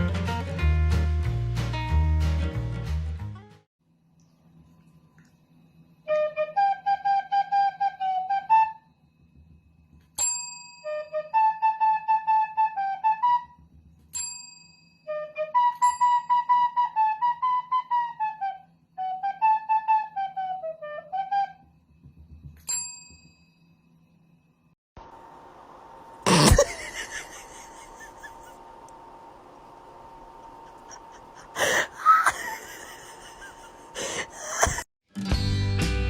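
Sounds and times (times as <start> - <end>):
flute-toned melody: 6.1 - 8.8, 10.9 - 13.6, 15.1 - 21.7.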